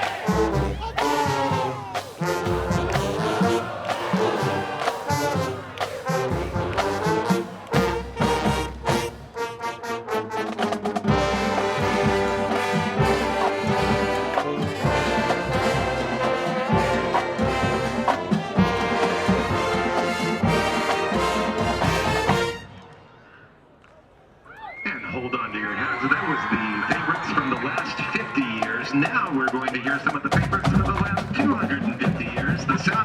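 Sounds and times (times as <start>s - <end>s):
drum-line hits: 0.0s - 9.6s, 10.4s - 22.7s, 25.8s - 33.0s
marching band playing: 0.0s - 23.0s, 24.9s - 33.0s.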